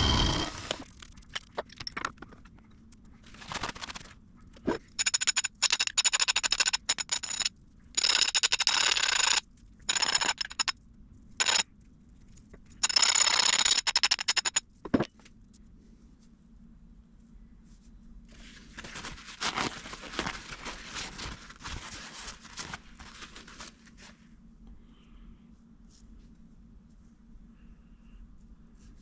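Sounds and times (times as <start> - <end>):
end mill cutting metal: 0.0 - 0.8
high ringing whine: 0.0 - 0.8
spindle humming: 0.0 - 0.8.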